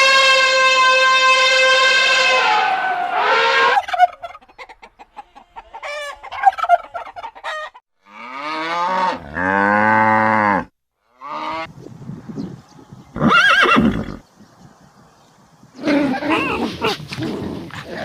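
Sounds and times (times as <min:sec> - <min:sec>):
cow mooing: 0:08.0 - 0:11.7.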